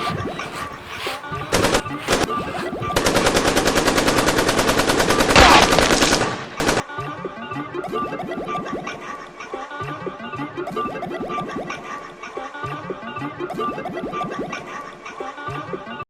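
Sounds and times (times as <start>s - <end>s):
rapid automatic gunfire: 3.0s - 6.8s.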